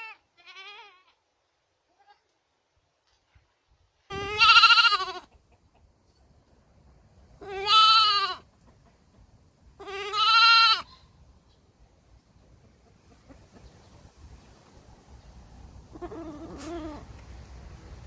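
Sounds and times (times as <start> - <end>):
baby goat bleating: 0.0 - 1.2, 4.1 - 5.3, 7.4 - 8.5, 9.8 - 11.1, 15.9 - 17.1.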